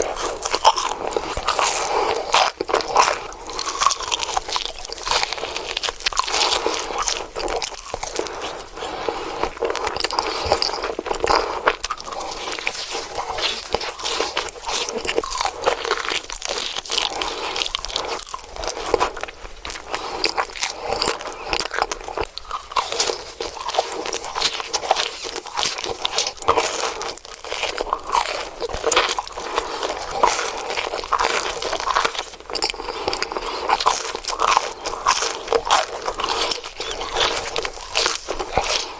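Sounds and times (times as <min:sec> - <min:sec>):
person chewing crunchy food: 0:00.0 - 0:38.9.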